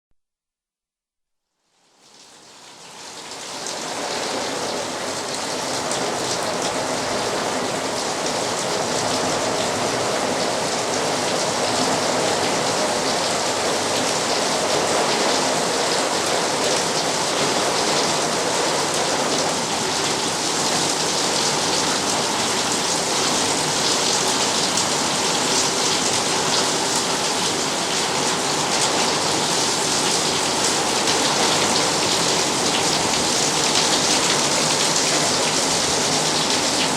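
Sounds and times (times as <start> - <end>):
rain on a metal roof: 1.6 - 36.9.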